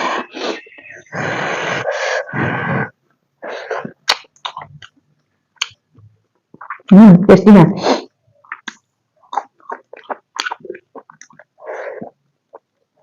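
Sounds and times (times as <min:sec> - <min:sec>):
mouth clicks and smacks: 0:03.8 - 0:06.9, 0:08.4 - 0:11.6.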